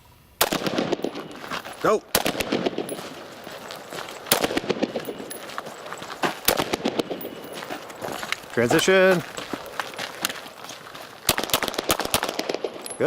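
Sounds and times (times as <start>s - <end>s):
gunshots with echo: 0.4s - 3.4s, 4.1s - 5.4s, 6.4s - 7.5s, 11.3s - 13.0s.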